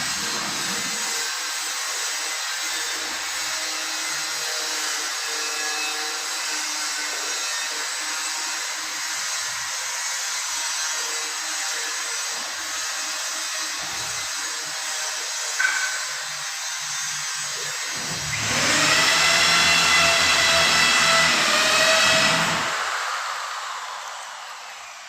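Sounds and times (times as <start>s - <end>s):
power tool whirring: 0.0s - 9.6s, 10.2s - 25.0s.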